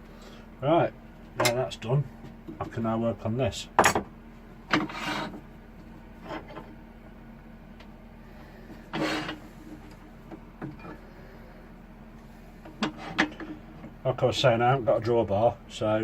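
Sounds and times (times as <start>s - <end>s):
steady low hum: 0.0s - 16.0s
brief scrape of parts: 8.8s - 9.5s.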